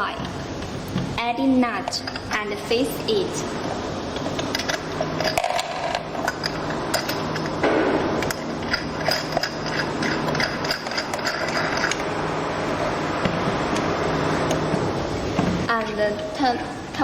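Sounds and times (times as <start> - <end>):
small metal parts clicking: 8.2 - 12.0.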